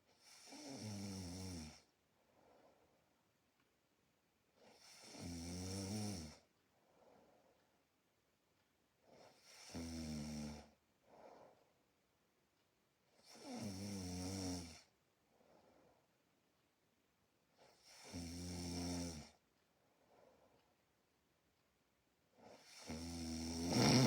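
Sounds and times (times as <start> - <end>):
faint breathing: 2.2 - 3.1, 6.7 - 7.8, 11.0 - 11.8
person snoring: 22.6 - 24.0.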